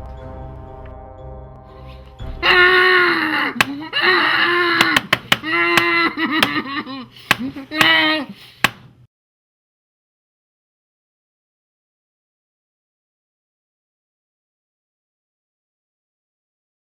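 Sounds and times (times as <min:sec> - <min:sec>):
person yelling: 0:02.4 - 0:08.4
sharp slaps: 0:03.6 - 0:03.9, 0:04.7 - 0:06.6, 0:07.3 - 0:08.0, 0:08.6 - 0:09.0.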